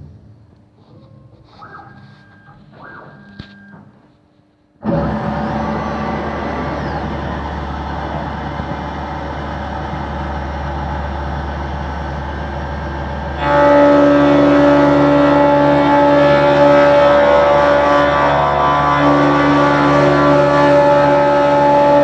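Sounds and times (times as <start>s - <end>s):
machine mechanical noise and hum: 0.0s - 13.4s
pitched machine whine: 1.2s - 4.2s, 4.8s - 13.8s.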